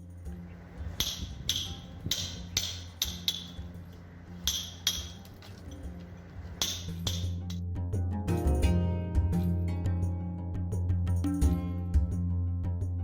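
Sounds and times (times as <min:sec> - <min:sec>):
metal tool clinking on masonry: 0:00.0 - 0:07.6
music: 0:00.0 - 0:13.0.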